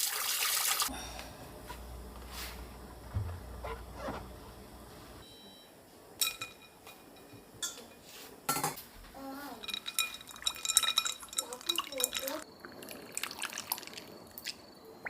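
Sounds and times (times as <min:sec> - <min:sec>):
dishes and cutlery clinking: 0:06.2 - 0:08.8, 0:09.5 - 0:12.4.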